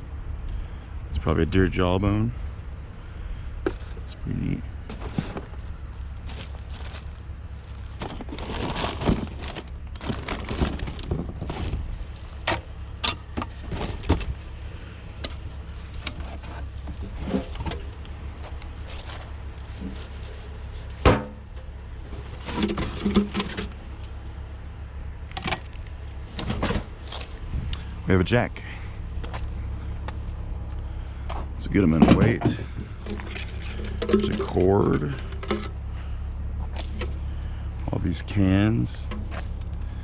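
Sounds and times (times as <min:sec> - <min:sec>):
steady low rumble: 0:00.0 - 0:40.0
scrap items knocking and clattering: 0:04.9 - 0:05.6, 0:07.9 - 0:11.8, 0:13.3 - 0:14.3, 0:22.2 - 0:23.7, 0:32.0 - 0:35.8.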